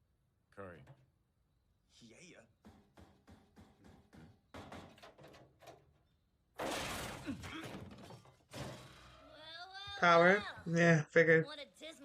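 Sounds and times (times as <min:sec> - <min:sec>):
bang: 0:06.5 - 0:09.2
loud crash: 0:06.6 - 0:09.2.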